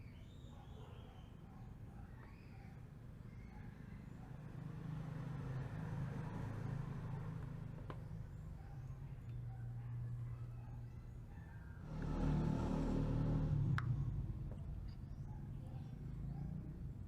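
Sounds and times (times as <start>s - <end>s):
vehicle engine rumbling: 11.8s - 17.0s.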